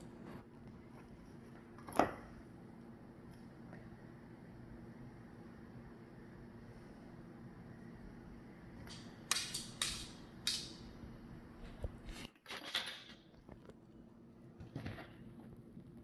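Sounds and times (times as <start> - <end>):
low room hum: 0.0 - 16.0.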